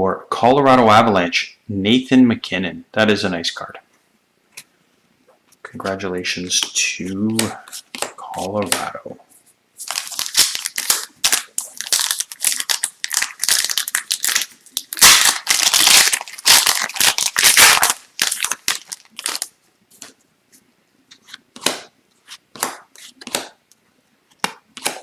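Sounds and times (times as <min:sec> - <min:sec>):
cards clicking and tapping: 0:06.5 - 0:09.0, 0:21.1 - 0:23.6, 0:24.3 - 0:25.0
wrapper tearing and crinkling: 0:09.8 - 0:19.5.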